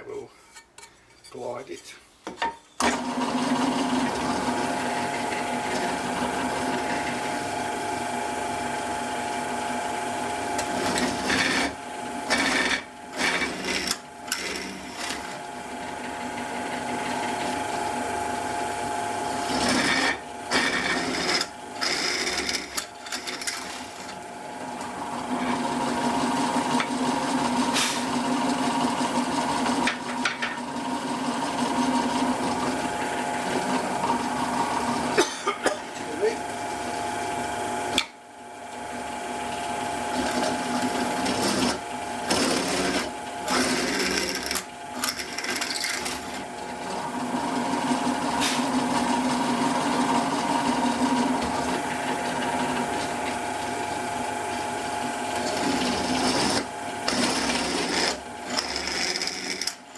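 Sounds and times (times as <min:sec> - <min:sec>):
electric drill boring: 0:10.5 - 0:15.4, 0:19.0 - 0:24.1, 0:40.1 - 0:47.0, 0:55.4 - 0:59.9.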